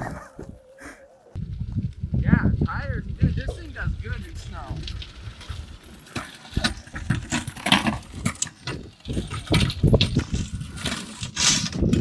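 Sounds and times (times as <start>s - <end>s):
saw blade wheel scraping snow and dirt: 3.2s - 12.0s.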